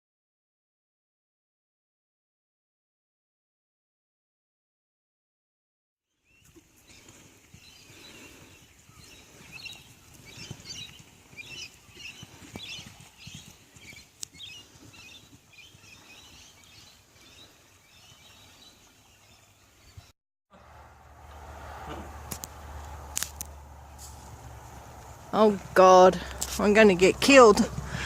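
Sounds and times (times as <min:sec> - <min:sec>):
birds chirping: 0:06.1 - 0:28.0
rustling: 0:21.7 - 0:25.3.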